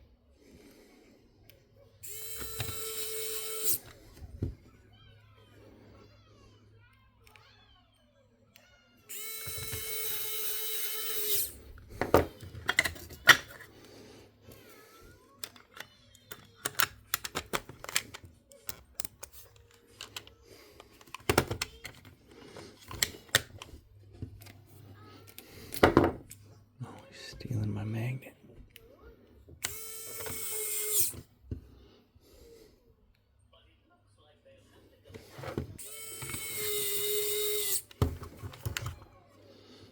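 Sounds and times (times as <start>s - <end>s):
small electric motor whirring: 2.0s - 4.1s, 9.1s - 11.7s, 29.6s - 31.3s, 35.8s - 38.8s
small parts clicking and tapping: 15.4s - 22.2s.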